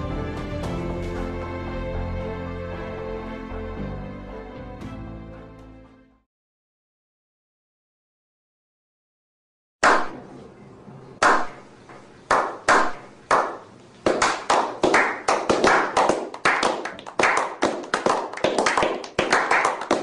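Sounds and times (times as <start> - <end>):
hands clapping: 9.8 - 10.2, 11.2 - 20.0.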